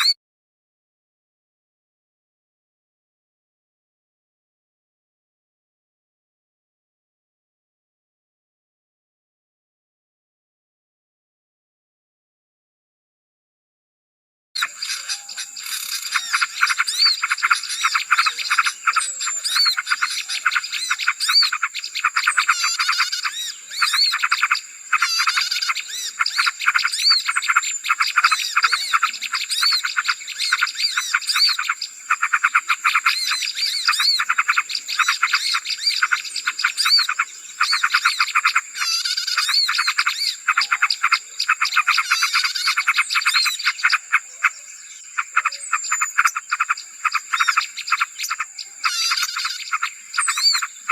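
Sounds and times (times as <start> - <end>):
small birds chirping rapidly: 14.6 - 50.9.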